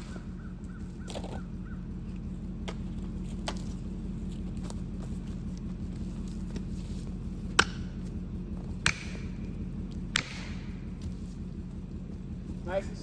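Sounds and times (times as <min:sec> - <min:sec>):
low engine hum: 0:00.0 - 0:13.0.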